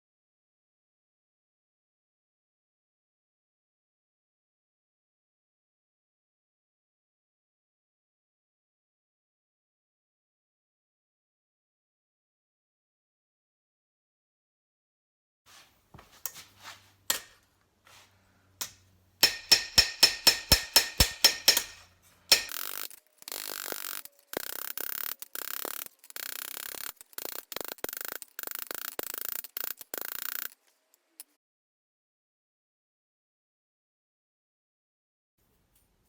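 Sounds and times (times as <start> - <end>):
hammer ringing on steel and anvil: 18.6 - 22.6.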